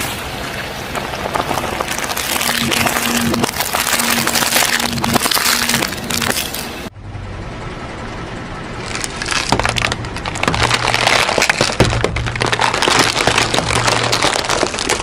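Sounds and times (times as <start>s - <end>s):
tyre low rumble: 0.0s - 15.0s
crackles and sharp snaps: 0.9s - 6.8s, 8.8s - 15.0s.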